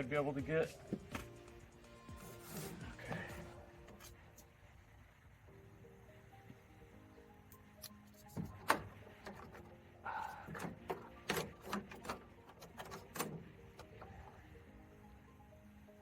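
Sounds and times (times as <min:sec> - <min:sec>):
faint background music: 0:00.0 - 0:16.0
sharp clicks and knocks: 0:08.2 - 0:09.8, 0:10.5 - 0:14.1.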